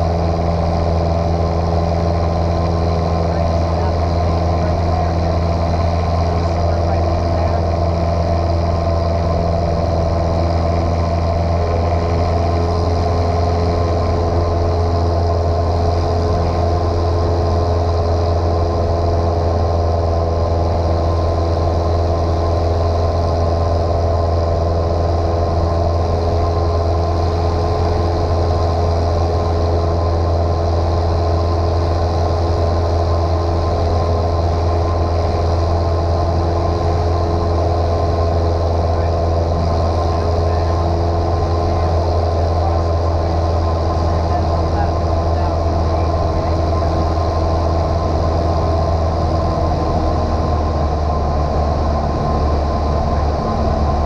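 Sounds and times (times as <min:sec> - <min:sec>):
airplane engine droning: 0:00.0 - 0:54.0.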